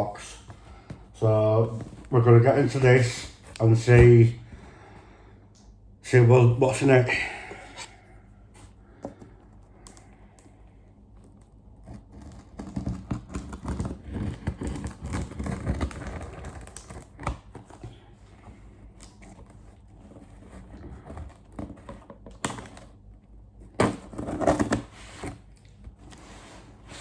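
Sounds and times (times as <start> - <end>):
cardboard box scratching and rustling: 0.0 - 4.5, 11.8 - 23.1, 23.8 - 27.0
cardboard scrapes: 0.0 - 4.7, 11.8 - 22.8, 23.8 - 27.0.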